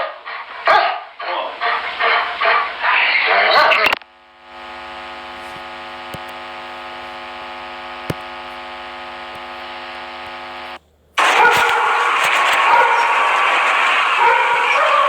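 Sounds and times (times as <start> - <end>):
steady hum with overtones: 0.0 - 15.0
loud sound: 11.2 - 15.0.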